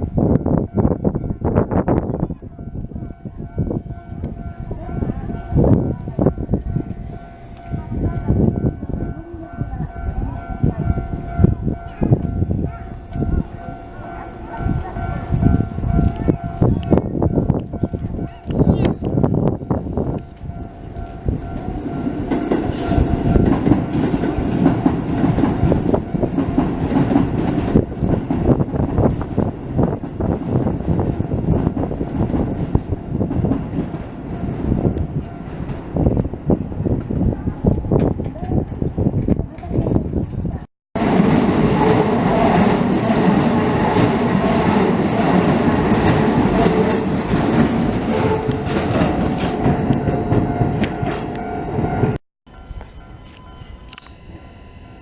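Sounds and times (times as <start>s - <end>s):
train wheel squeals: 19.7s - 23.6s, 41.6s - 55.0s
train wheels clattering over rails: 20.4s - 37.1s, 41.0s - 52.2s.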